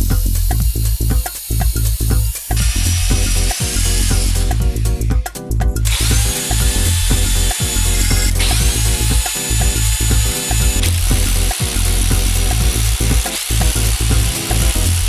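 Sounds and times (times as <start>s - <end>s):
music with heavy beat: 0.0s - 15.0s
electric drill motor whine: 5.9s - 15.0s.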